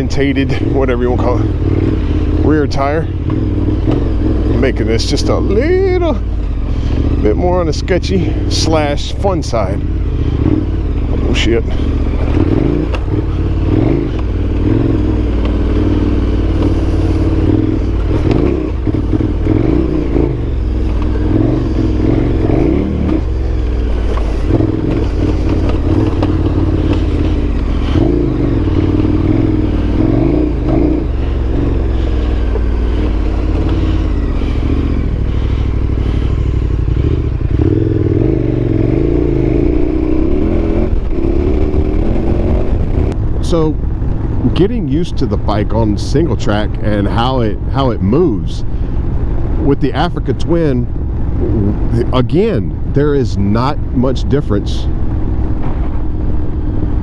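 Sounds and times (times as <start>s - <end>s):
motorcycle engine revving: 0.0s - 57.0s
motorcycle knocks and clatter: 3.2s - 4.3s, 10.4s - 34.0s.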